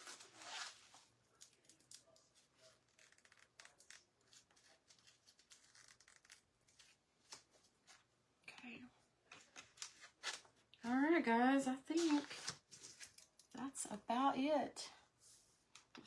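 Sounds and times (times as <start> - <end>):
paper rustling: 0.0 - 8.1, 9.3 - 10.7, 11.9 - 13.5.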